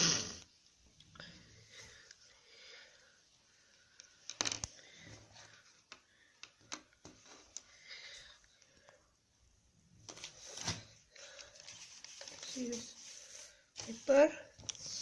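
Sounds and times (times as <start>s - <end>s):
rustling: 10.0s - 15.0s.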